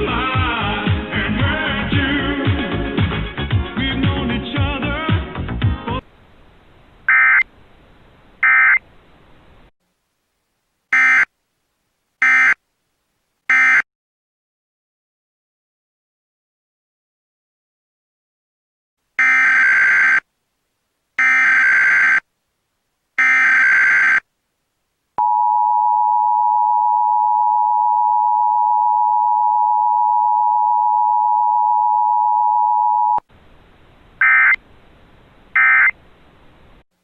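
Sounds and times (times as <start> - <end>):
faint hiss: 6.0 - 13.5.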